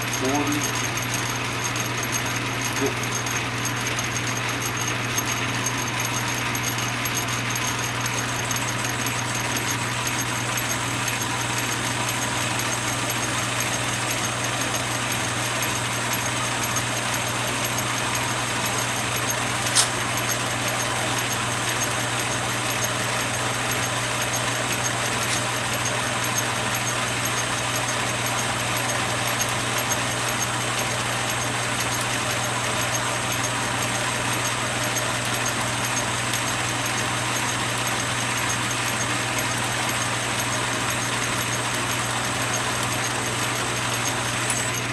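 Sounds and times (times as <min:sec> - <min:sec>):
lathe motor hum: 0:00.0 - 0:44.9
sharp click: 0:19.6 - 0:20.0.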